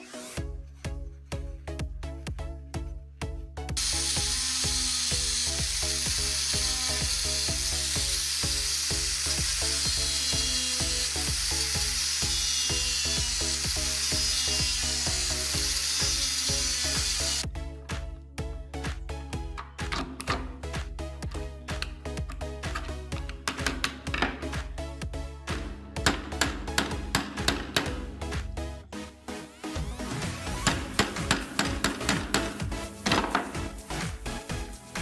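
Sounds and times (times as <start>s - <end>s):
background music with steady beat: 0.0s - 35.0s
abrasive hiss of rust removal: 3.8s - 17.4s.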